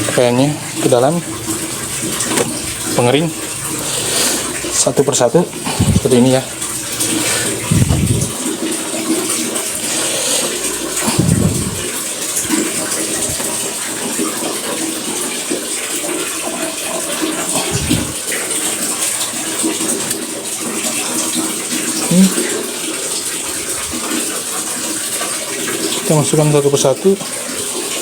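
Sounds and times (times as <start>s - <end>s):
water running: 0.0s - 28.0s
dull low thumps: 7.7s - 8.4s.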